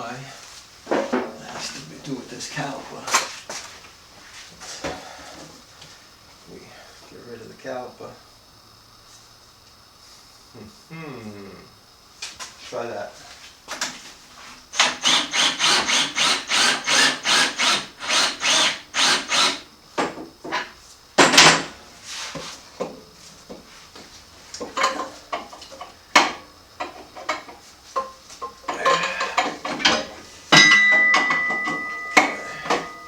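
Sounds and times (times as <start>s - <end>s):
hand tool rasping strokes: 14.8s - 19.6s.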